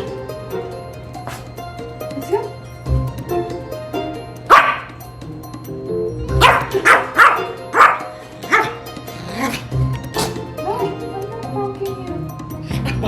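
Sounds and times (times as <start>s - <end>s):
background music: 0.0s - 13.0s
dog barking: 4.5s - 5.0s, 6.4s - 8.8s.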